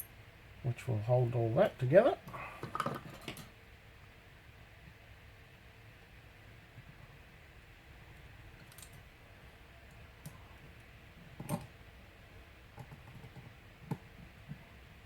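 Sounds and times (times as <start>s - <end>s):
small parts clicking and tapping: 2.2s - 3.5s, 8.6s - 9.1s, 9.9s - 11.7s, 12.8s - 14.6s.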